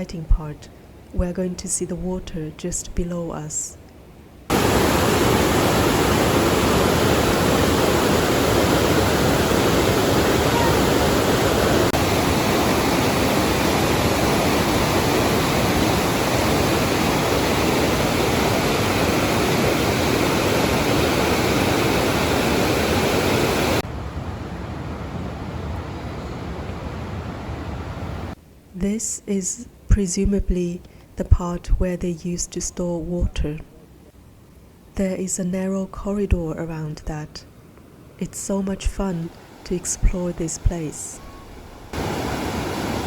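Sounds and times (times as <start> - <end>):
river water rushing through channel: 4.5 - 23.8, 41.4 - 43.0.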